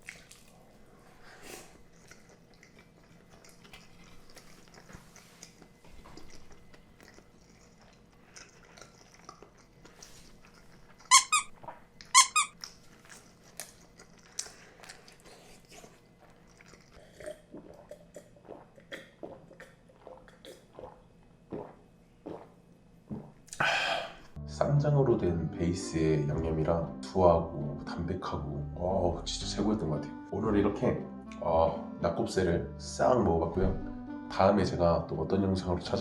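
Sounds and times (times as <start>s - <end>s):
soft chewing: 0.0s - 22.5s.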